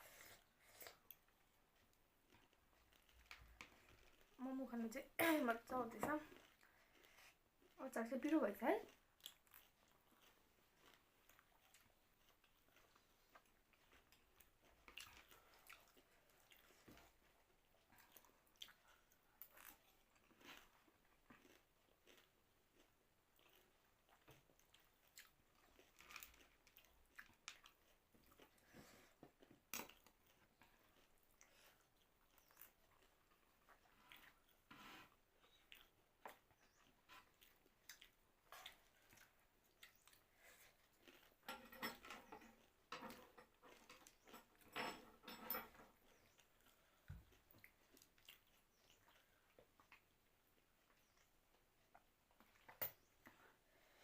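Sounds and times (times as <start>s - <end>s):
person chewing food: 0.0s - 4.4s, 6.2s - 7.8s, 8.8s - 41.5s, 42.3s - 44.7s, 45.8s - 54.0s.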